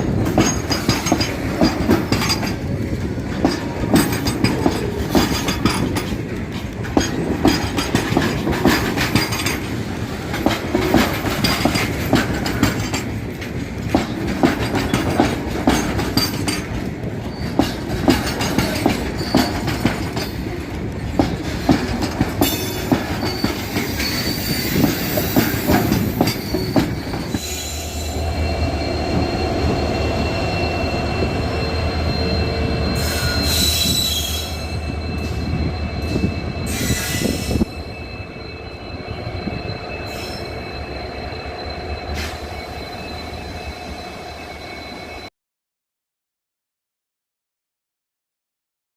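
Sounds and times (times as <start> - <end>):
train wheels clattering over rails: 0.0 - 27.6.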